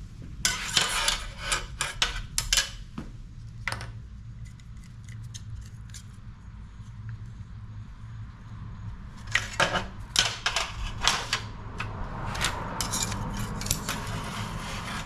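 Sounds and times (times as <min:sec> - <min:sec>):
low steady hum: 0:00.0 - 0:15.0
metal clinking and scraping: 0:00.4 - 0:02.8, 0:09.2 - 0:15.0.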